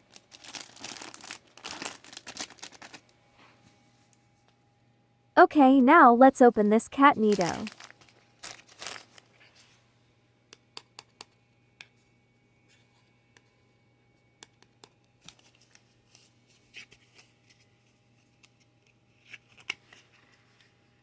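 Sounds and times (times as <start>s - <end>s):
plastic packaging rustling: 0.0s - 3.1s, 7.2s - 9.8s
low steady hum: 0.0s - 21.0s.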